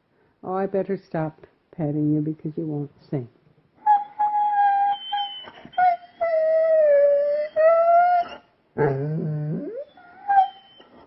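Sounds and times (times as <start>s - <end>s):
dog howling: 3.9s - 11.0s.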